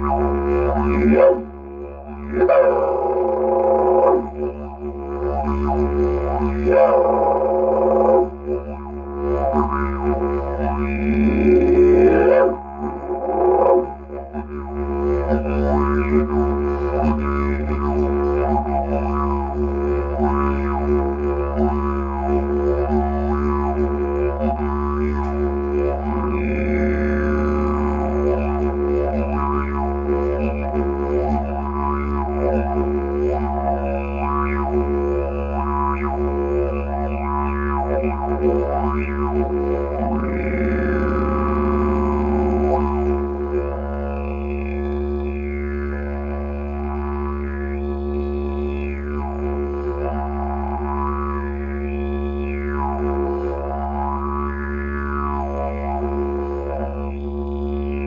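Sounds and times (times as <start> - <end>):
didgeridoo drone: 0.0 - 58.0.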